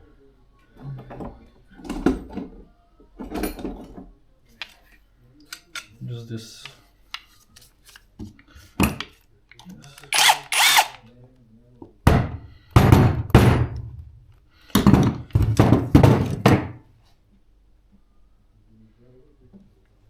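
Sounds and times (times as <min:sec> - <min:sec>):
power drill running: 0:10.1 - 0:11.0.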